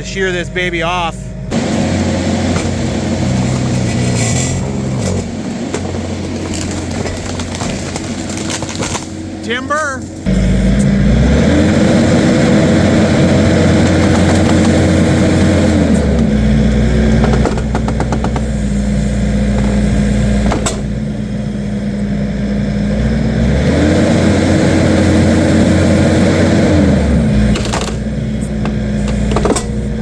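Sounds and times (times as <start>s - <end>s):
skid steer engine running hard: 0.0s - 30.0s.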